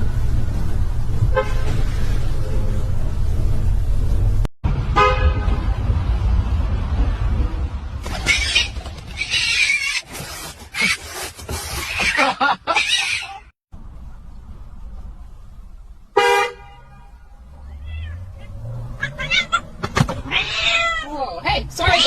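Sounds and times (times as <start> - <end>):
low rumble: 0.0 - 8.0
cat yowling and meowing: 17.6 - 21.2.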